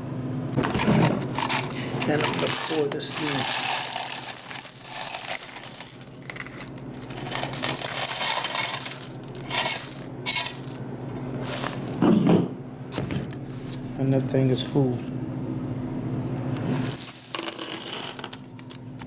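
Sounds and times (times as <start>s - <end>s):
coins jingling and clattering: 1.3s - 10.8s, 11.4s - 12.0s, 16.7s - 18.8s.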